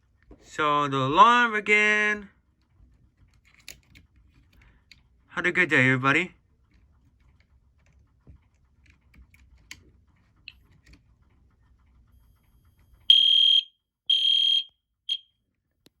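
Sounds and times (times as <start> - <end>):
fire alarm horn blasts: 13.1 - 15.2.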